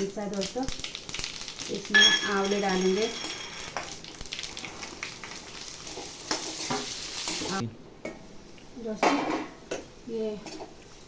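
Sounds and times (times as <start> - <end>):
food sizzling in hot oil: 0.0 - 7.6
spoon knocking in pan: 1.9 - 4.0.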